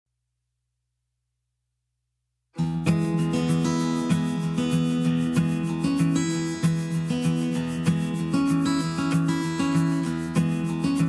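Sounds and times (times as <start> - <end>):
acoustic guitar strumming: 2.6 - 11.0.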